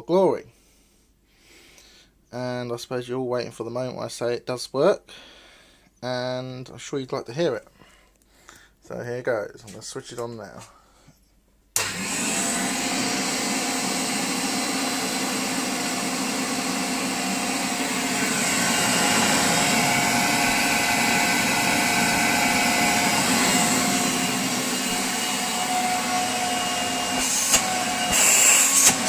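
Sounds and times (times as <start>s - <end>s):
vacuum cleaner running: 11.8s - 29.0s.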